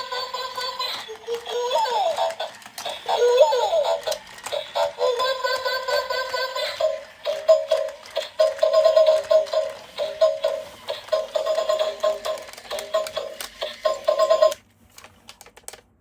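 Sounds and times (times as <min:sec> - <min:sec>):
electronic toy tune: 0:01.8 - 0:14.6.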